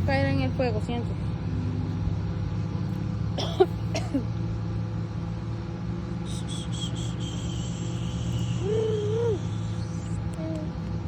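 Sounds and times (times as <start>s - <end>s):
low mechanical hum: 0.0s - 11.0s
small child coughing: 3.4s - 4.3s
insect chirping: 6.3s - 10.2s.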